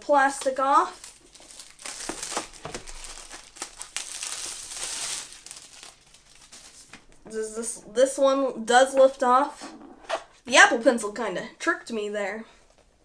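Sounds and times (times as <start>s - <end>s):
plastic wrap crinkling: 0.1s - 7.2s.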